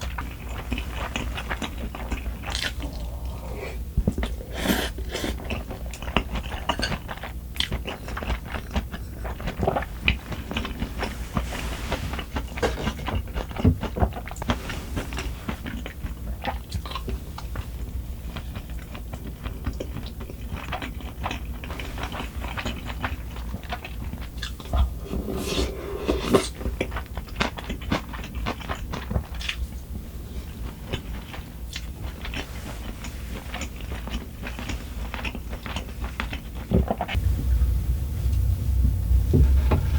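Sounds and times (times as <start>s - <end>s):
person chewing food: 0.0s - 10.8s
steady low hum: 0.0s - 13.6s, 21.3s - 27.3s, 37.1s - 39.9s.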